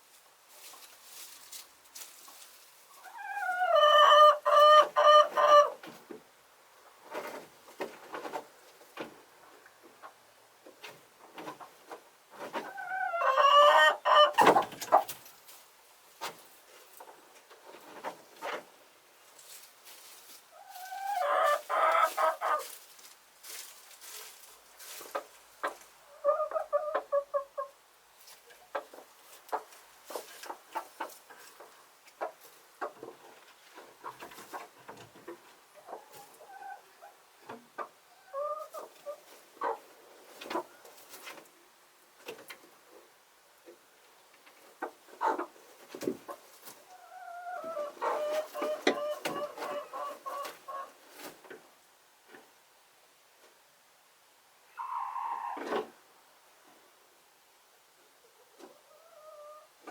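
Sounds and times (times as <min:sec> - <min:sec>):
chickens calling: 0:02.8 - 0:06.0, 0:12.4 - 0:15.2, 0:20.5 - 0:22.8, 0:24.9 - 0:27.8, 0:28.6 - 0:41.2, 0:44.8 - 0:51.3, 0:54.7 - 0:55.9, 0:58.2 - 0:59.9.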